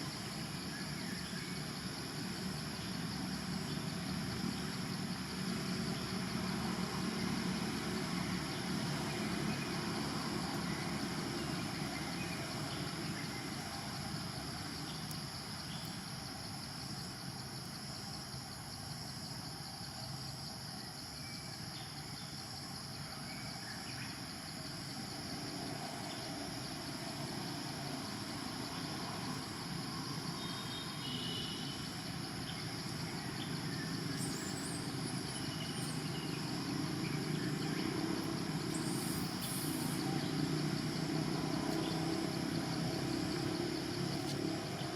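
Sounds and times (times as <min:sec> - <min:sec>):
high insect drone: 0:00.0 - 0:44.9.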